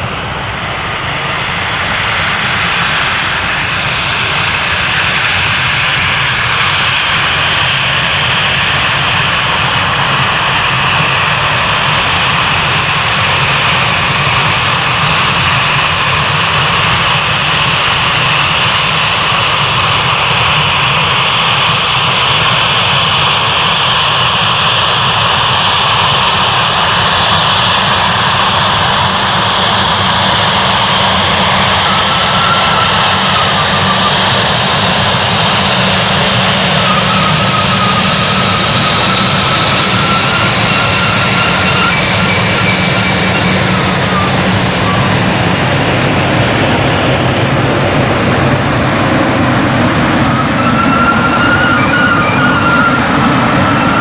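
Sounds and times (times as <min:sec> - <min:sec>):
jet engines running: 0:00.0 - 0:54.0
faint wavering whine: 0:30.4 - 0:54.0.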